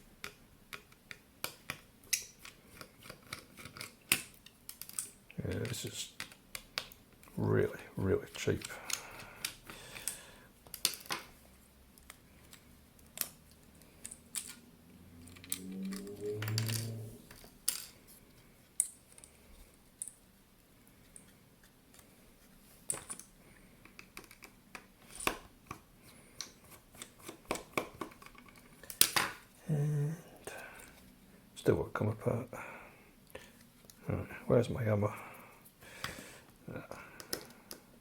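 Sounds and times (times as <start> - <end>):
small plastic parts clicking: 0.2 - 7.4, 8.3 - 11.3, 11.9 - 14.6, 15.2 - 18.0, 22.9 - 25.8, 36.9 - 37.9.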